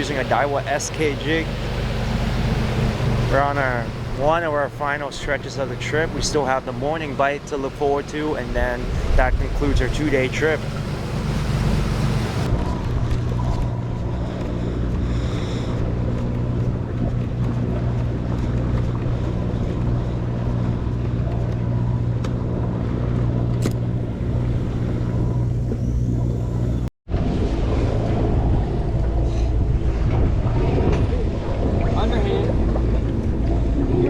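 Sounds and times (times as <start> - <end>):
water wash noise: 0.0 - 25.4
boat engine humming: 0.0 - 34.0.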